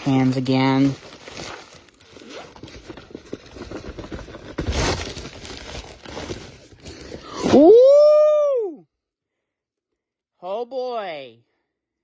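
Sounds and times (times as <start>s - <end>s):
packaging crinkling and scraping: 0.0s - 7.6s
packaging ripping: 0.0s - 7.6s.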